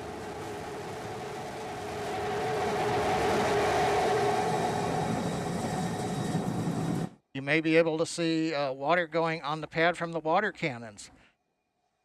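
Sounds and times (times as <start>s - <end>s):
rocket engines roaring: 0.0s - 7.2s.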